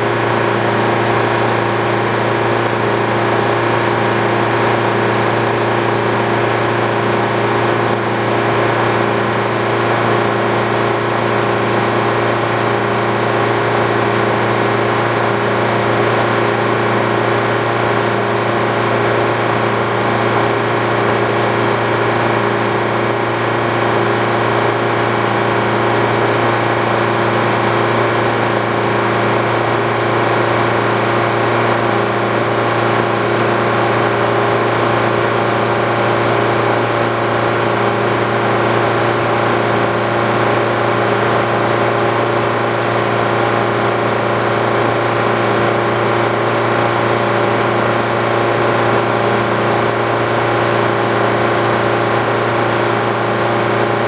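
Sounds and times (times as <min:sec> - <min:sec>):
sawmill machine hum: 0:00.0 - 0:54.0.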